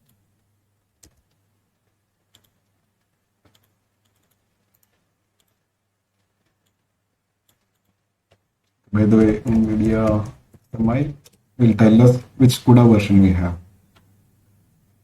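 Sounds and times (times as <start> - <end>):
faint low hum: 0.0 - 15.0
computer keyboard clicks: 1.0 - 11.5.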